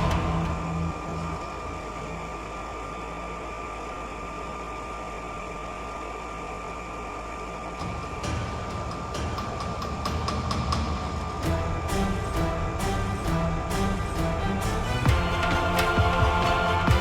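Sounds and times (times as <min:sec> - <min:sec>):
high whine: 0:00.0 - 0:08.2, 0:11.4 - 0:17.0
concrete pump engine humming: 0:11.4 - 0:17.0.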